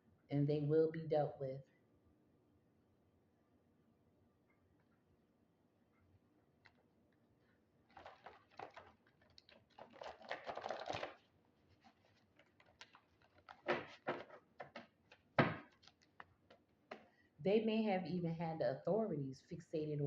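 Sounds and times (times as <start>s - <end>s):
cards rustling: 7.9s - 17.1s.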